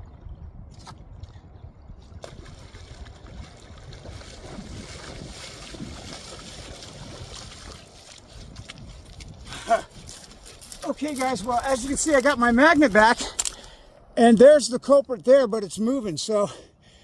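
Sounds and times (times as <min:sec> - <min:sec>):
wind buffeting microphone: 0:00.0 - 0:13.5
water sloshing and splashing: 0:00.0 - 0:13.8.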